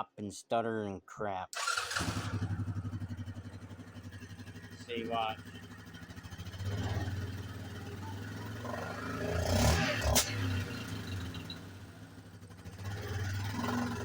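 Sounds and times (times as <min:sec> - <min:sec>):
engine idling and revving: 0:01.6 - 0:14.0
sharp engine pop: 0:09.8 - 0:10.7.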